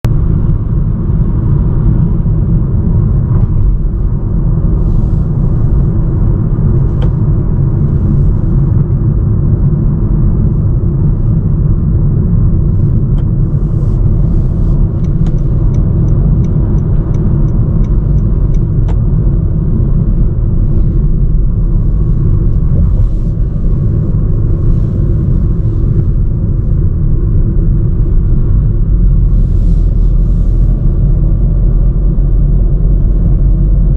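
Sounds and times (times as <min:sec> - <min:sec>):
car road noise at speed: 0:00.0 - 0:33.9.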